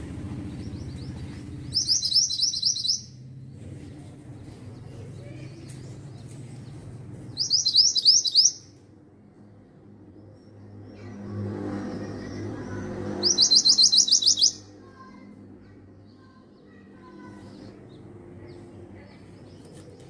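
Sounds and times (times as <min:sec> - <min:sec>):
low background rumble: 0:00.0 - 0:07.6
songbird chirping: 0:00.0 - 0:08.8, 0:10.2 - 0:14.7.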